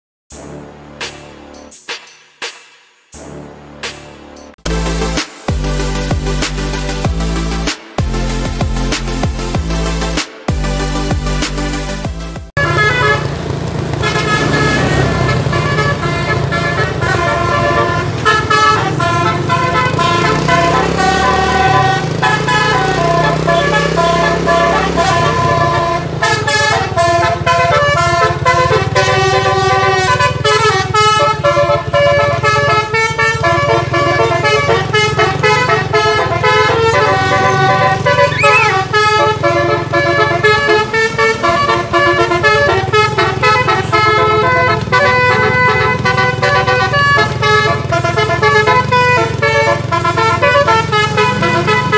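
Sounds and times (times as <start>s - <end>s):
musical air horn melodies: 4.7s - 51.9s
bus engine rumble: 12.6s - 51.9s.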